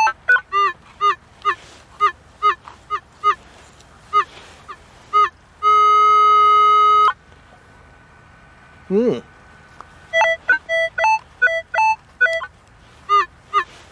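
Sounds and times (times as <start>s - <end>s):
metal detector beeping: 0.0s - 7.2s, 10.1s - 13.9s
metal detector long tone: 5.1s - 7.2s.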